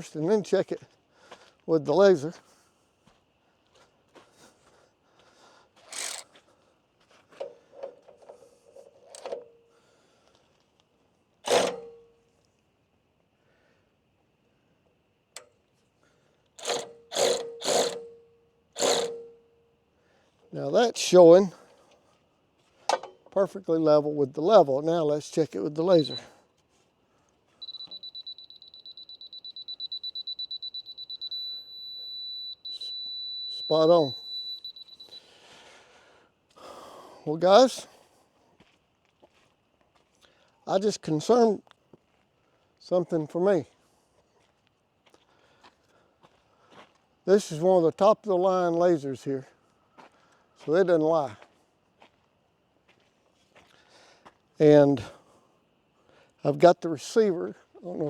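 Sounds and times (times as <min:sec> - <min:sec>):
sharp metal clank: 0:11.5 - 0:12.2, 0:16.6 - 0:19.5
laser level receiver beeping: 0:25.9 - 0:26.3, 0:27.6 - 0:35.3.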